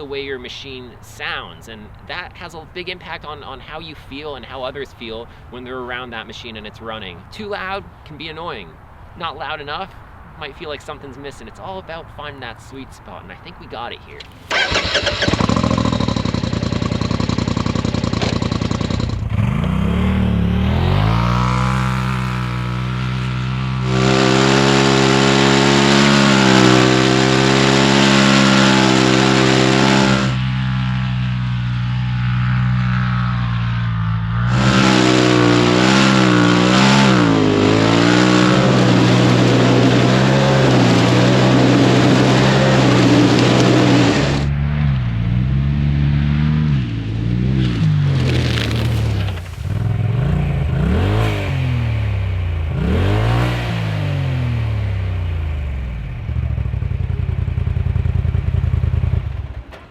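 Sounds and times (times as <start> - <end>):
engine revving under throttle: 14.4 - 56.7.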